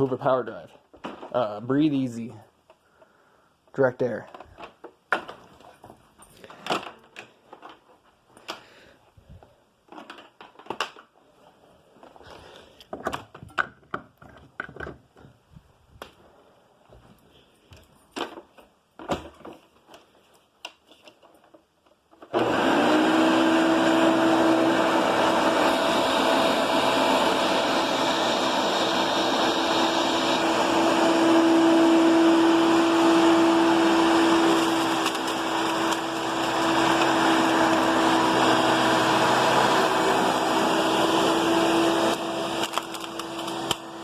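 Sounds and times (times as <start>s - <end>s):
upright vacuum cleaner running: 22.3s - 44.0s.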